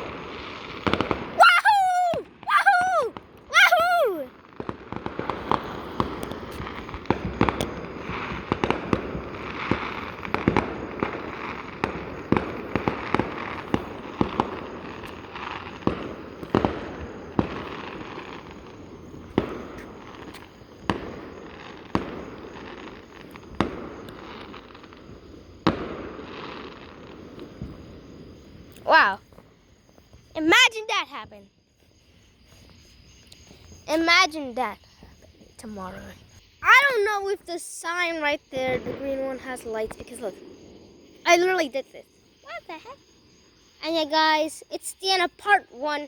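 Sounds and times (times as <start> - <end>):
fireworks sharp bangs: 0.0 - 31.4, 38.0 - 43.3
fireworks crackle: 0.0 - 46.0.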